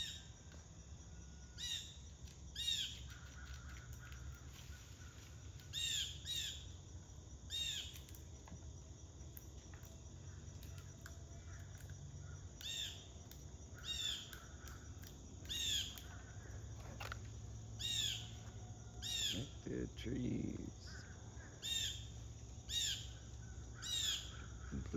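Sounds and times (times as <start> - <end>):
blue jay squawking: 15.5 - 16.1, 17.8 - 18.3, 22.7 - 24.5.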